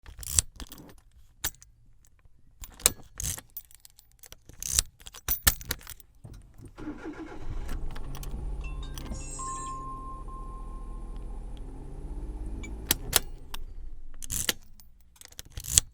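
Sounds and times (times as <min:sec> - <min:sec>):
keys clicking and jangling: 0:00.0 - 0:01.7, 0:02.6 - 0:06.8, 0:07.8 - 0:09.7, 0:12.8 - 0:15.9
car engine starting and running: 0:06.2 - 0:15.1.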